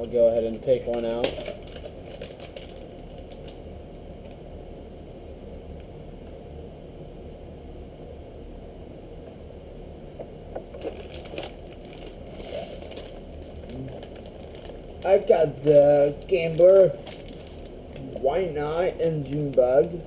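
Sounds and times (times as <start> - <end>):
low background hum: 0.0 - 20.0
plastic pack crinkling: 0.8 - 3.6, 10.7 - 18.2.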